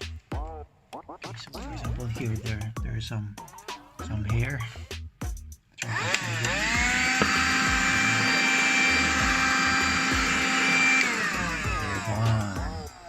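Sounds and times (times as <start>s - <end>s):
hand vacuum motor whining: 5.8s - 13.0s.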